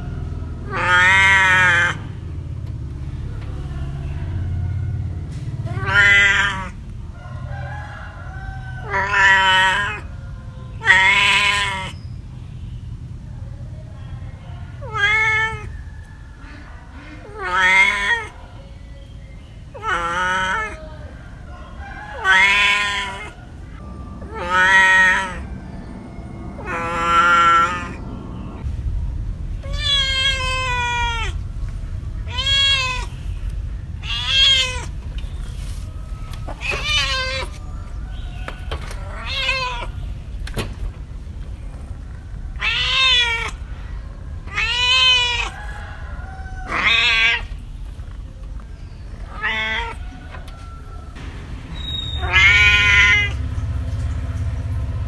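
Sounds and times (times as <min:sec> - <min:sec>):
low steady rumble: 0:00.0 - 0:55.0
cat meowing: 0:00.6 - 0:02.1, 0:05.6 - 0:06.8, 0:08.8 - 0:10.1, 0:10.8 - 0:12.0, 0:14.8 - 0:15.8, 0:16.4 - 0:18.6, 0:19.7 - 0:25.7, 0:26.5 - 0:28.6, 0:29.6 - 0:31.5, 0:32.2 - 0:40.2, 0:42.0 - 0:51.2, 0:51.8 - 0:53.4.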